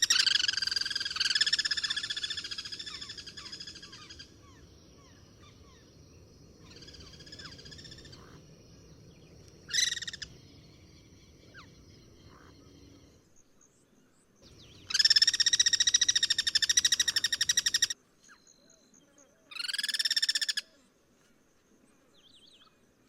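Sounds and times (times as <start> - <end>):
cuckoos calling harshly: 0.0 - 5.9, 9.7 - 12.6, 14.5 - 18.0.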